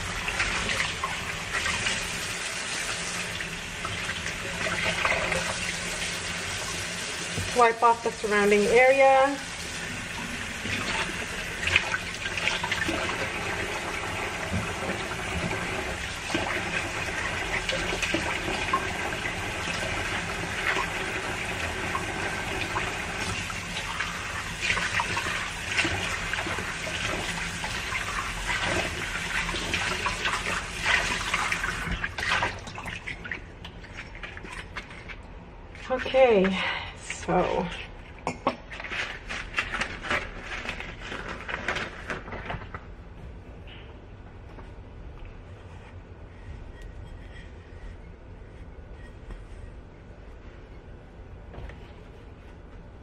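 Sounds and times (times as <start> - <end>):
tap water running into sink: 0.0 - 35.1.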